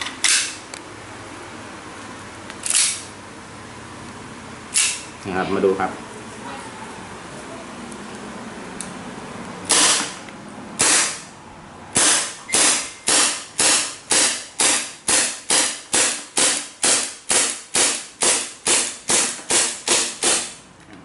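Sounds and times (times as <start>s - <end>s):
airsoft pistol shots: 9.7s - 10.2s, 10.8s - 11.3s, 12.0s - 20.6s.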